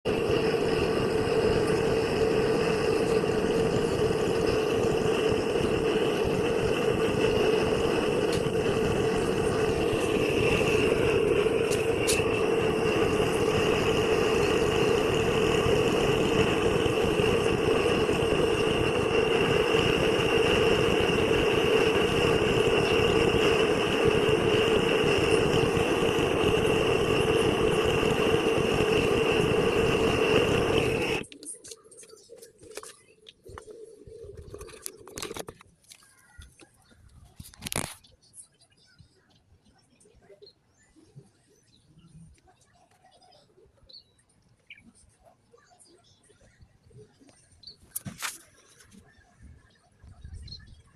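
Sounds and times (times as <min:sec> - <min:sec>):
welding torch flame hissing: 0:00.0 - 0:32.9.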